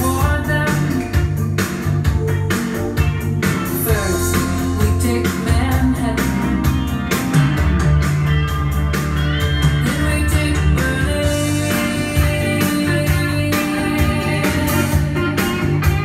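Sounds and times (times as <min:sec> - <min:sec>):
person singing: 0:00.0 - 0:01.4, 0:03.6 - 0:07.1, 0:09.6 - 0:16.0
rock music: 0:00.0 - 0:16.0.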